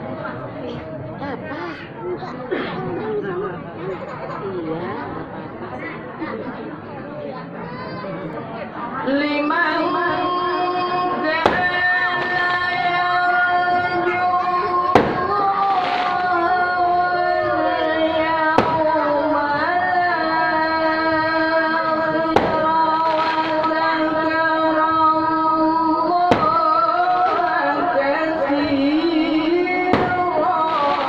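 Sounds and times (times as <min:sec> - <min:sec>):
person reciting in melodic chant: 0:07.8 - 0:31.0.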